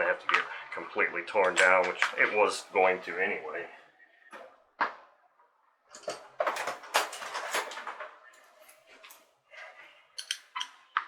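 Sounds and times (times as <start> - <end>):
metal parts clattering and scraping: 6.0 - 8.1, 10.2 - 10.7.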